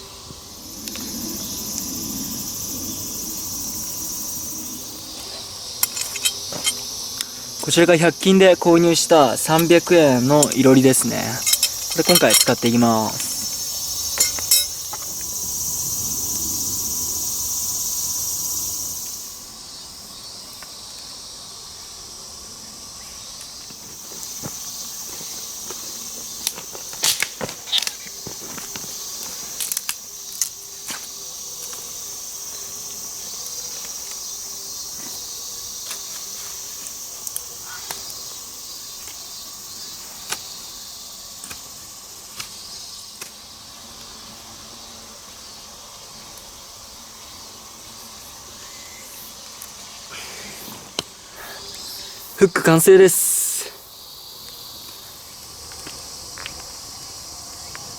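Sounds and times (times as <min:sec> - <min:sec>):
insects chirping: 0:00.0 - 0:57.9
knife carving wood: 0:09.5 - 0:13.1.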